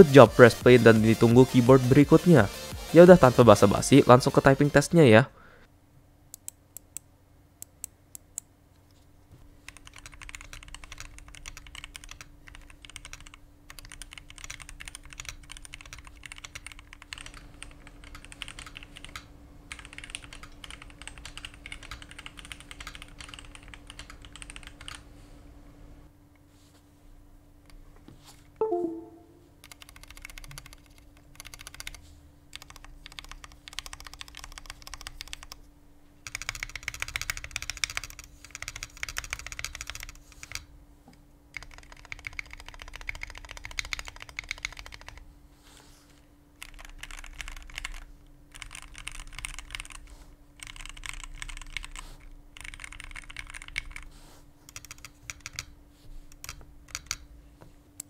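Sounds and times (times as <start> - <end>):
faint steady hum: 4.9 - 58.0
mechanical keyboard keys clicking: 9.7 - 25.0, 29.6 - 35.6, 36.2 - 40.7, 41.6 - 45.2, 46.6 - 50.0, 50.6 - 52.0, 52.6 - 54.1, 54.7 - 55.7, 56.3 - 57.2.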